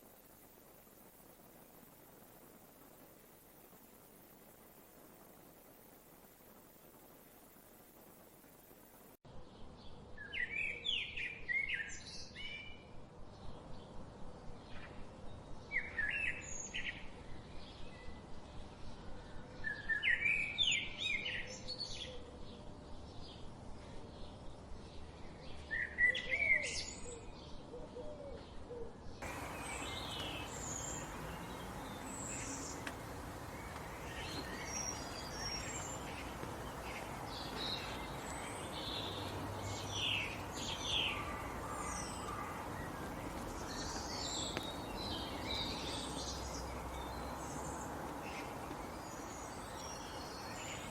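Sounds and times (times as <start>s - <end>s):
steady hiss: 0.0s - 9.2s, 29.2s - 50.9s
songbirds singing: 9.3s - 50.9s
high bird chirps: 29.2s - 50.9s.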